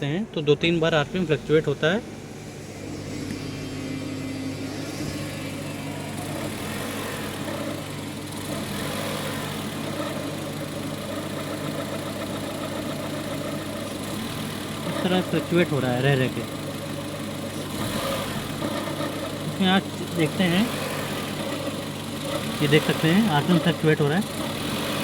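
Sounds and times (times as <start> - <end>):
van engine idling unevenly: 0.0 - 25.0.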